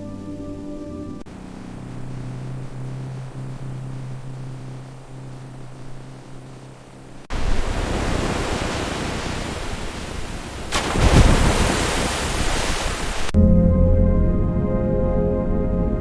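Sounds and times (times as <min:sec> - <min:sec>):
faint low hum: 0:00.0 - 0:07.3
water rushing: 0:01.3 - 0:13.4.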